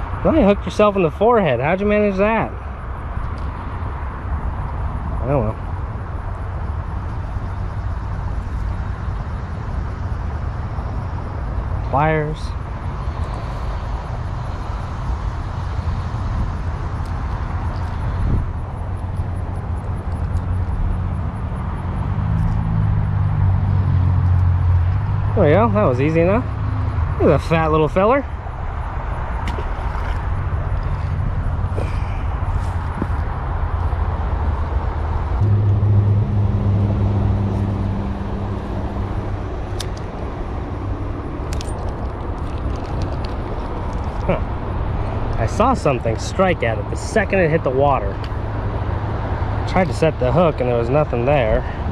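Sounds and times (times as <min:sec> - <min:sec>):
highway traffic rumble: 0:00.0 - 0:51.9
passing vehicle hum: 0:00.0 - 0:51.9
wind on microphone: 0:12.6 - 0:25.4, 0:29.4 - 0:45.7.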